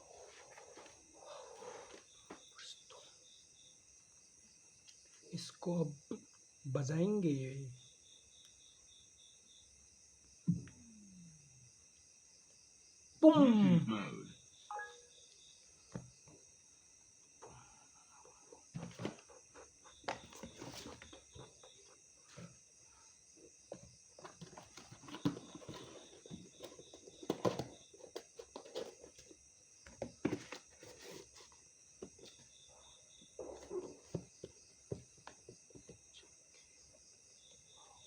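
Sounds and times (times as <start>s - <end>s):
insects chirring: 0.0s - 38.0s.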